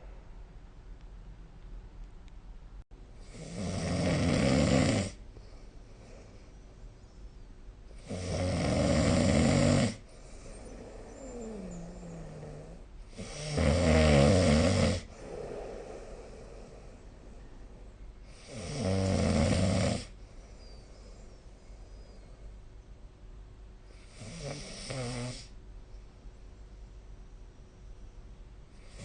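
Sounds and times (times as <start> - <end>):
person snoring: 3.2 - 5.2, 8.0 - 17.2, 18.3 - 20.2, 24.0 - 25.6
quiet breathing: 5.1 - 8.1, 9.6 - 13.6, 15.0 - 19.2, 19.9 - 22.9.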